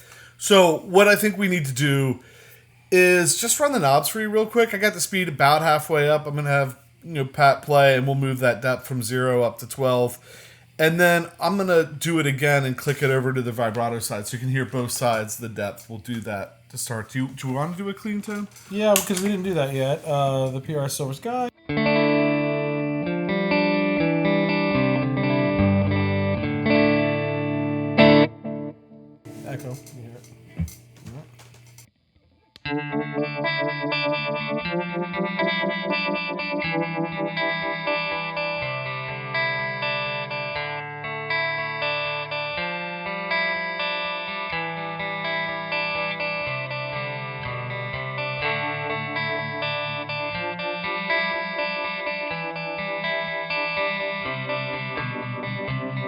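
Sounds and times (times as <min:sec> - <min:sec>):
clean electric guitar: 0:21.3 - 0:31.8, 0:32.6 - 0:56.0.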